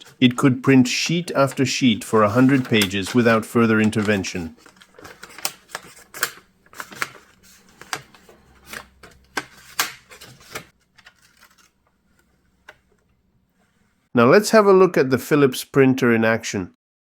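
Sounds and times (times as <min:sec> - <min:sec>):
paper rustling: 0:00.0 - 0:12.5.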